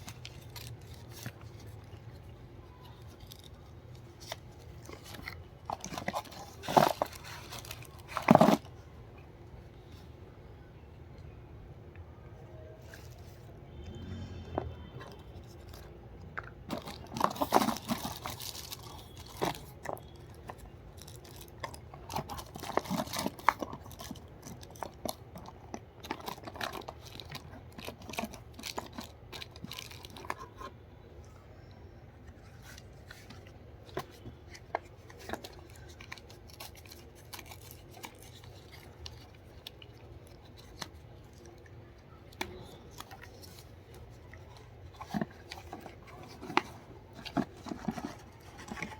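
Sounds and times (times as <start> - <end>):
packaging crackles and clicks: 0.0 - 8.8, 14.6 - 30.7, 32.3 - 48.9.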